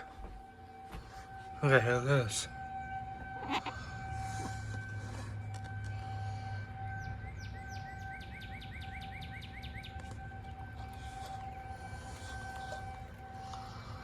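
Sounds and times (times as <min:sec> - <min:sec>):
songbird singing trill: 0:07.0 - 0:10.6.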